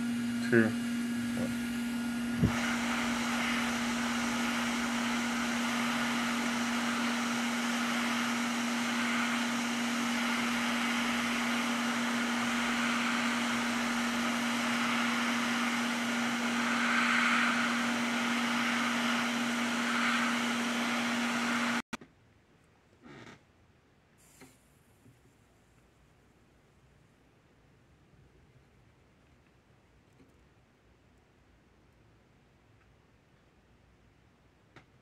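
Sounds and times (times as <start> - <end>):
hot air gun blowing: 0.0 - 21.8
motor hum: 0.0 - 21.8.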